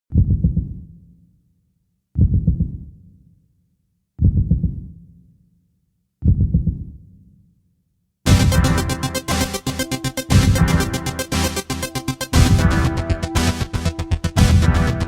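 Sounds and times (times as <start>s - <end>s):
booming heartbeat-like thuds: 2.2s - 2.8s, 4.2s - 4.9s, 6.2s - 6.9s
electronic dance beat: 8.3s - 15.0s.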